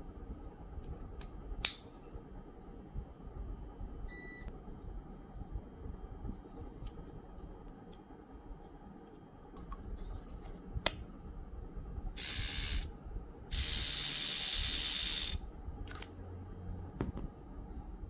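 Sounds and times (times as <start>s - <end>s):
trimmer motor running: 12.2s - 12.9s, 13.5s - 16.1s.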